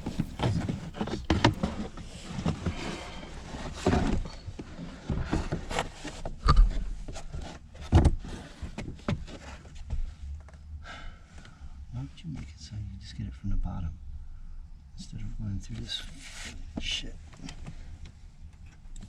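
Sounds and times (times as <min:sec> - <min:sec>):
heavy thumps: 0:00.0 - 0:01.7
plastic trim clicking and rustling: 0:00.0 - 0:01.7.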